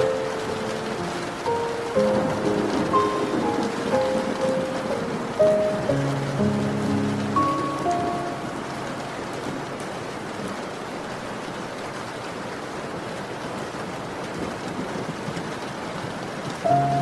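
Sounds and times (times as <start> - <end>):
musical note: 0.0 - 9.7
steady rain falling: 0.0 - 17.0.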